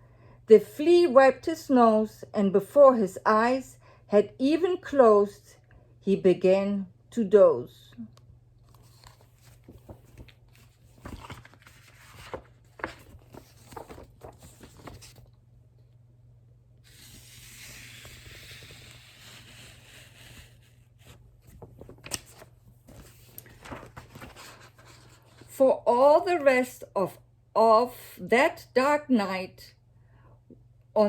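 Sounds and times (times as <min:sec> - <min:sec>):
book pages turning: 0:08.6 - 0:15.4, 0:16.9 - 0:25.5.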